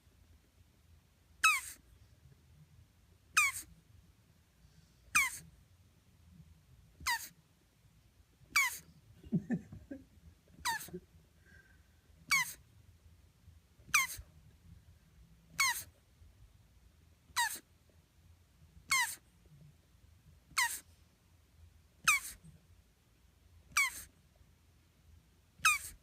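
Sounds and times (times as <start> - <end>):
tortoise squeaking: 1.4 - 1.8, 3.3 - 3.7, 5.1 - 5.5, 7.0 - 7.4, 8.5 - 8.9, 10.6 - 10.9, 12.3 - 12.6, 13.9 - 14.2, 15.6 - 15.9, 17.4 - 17.6, 18.9 - 19.2, 20.5 - 20.8, 22.0 - 22.4, 23.7 - 24.1, 25.6 - 26.0.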